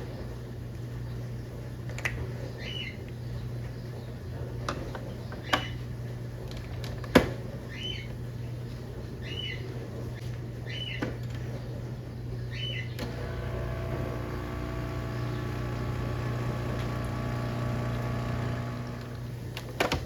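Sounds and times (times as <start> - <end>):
steady low hum: 11.8 - 19.6
bird chirping: 12.4 - 13.0.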